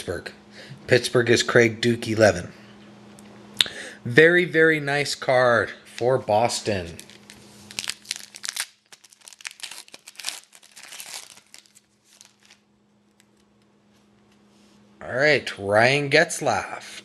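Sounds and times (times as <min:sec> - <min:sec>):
wrapper being torn and crinkled: 0:06.9 - 0:13.5.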